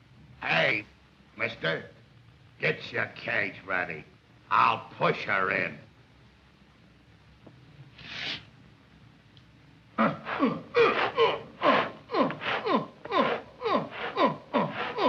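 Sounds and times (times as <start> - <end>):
short hissing breath: 8.0 - 8.5, 10.2 - 15.0.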